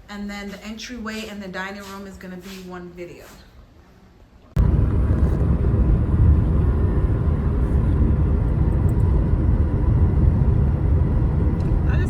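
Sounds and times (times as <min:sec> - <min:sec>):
car interior low rumble: 0:04.6 - 0:12.0.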